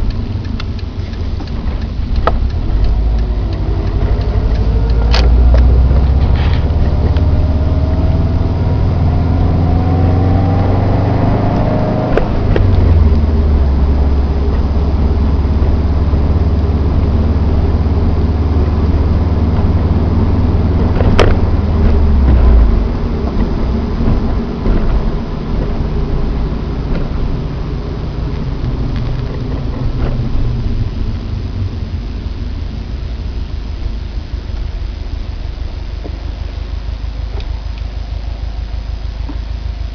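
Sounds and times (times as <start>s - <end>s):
sharp clicks: 0.0s - 7.3s
car engine running: 0.0s - 39.9s
turbo whine: 0.0s - 39.9s.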